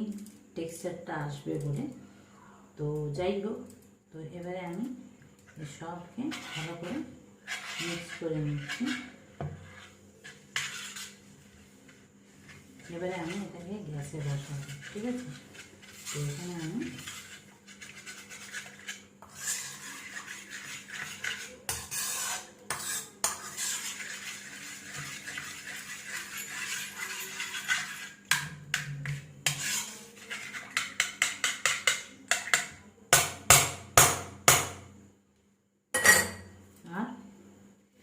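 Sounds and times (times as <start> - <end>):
spoon scraping in metal pan: 5.5 - 32.8, 36.0 - 36.5.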